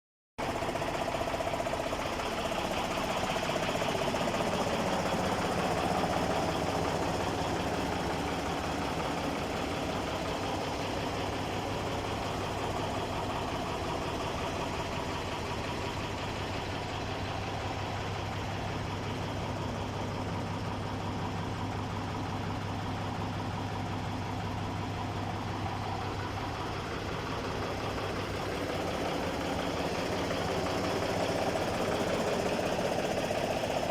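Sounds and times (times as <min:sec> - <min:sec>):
diesel truck engine idling: 0:00.4 - 0:33.9.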